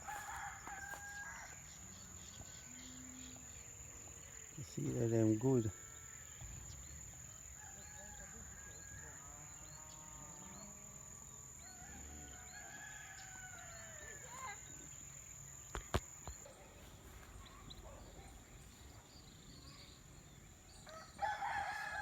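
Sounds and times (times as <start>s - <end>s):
faint rooster crowing: 0.0s - 3.4s, 5.4s - 14.7s, 20.8s - 22.0s.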